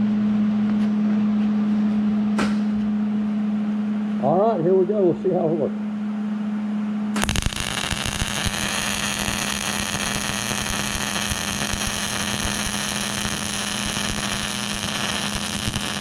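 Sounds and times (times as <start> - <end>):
low hum: 0.0 - 16.0
arc welding crackling sizzle: 7.2 - 16.0.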